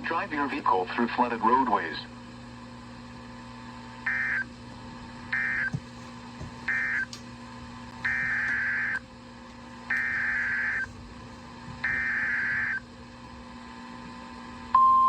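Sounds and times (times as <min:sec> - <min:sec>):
low steady hum: 0:00.0 - 0:15.0
screechy two-tone digital bursts: 0:04.1 - 0:04.4, 0:11.9 - 0:12.8.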